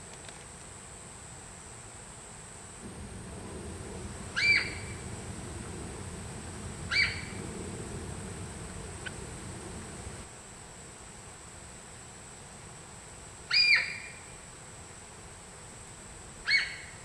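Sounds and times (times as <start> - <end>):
bird calling: 2.8 - 10.3.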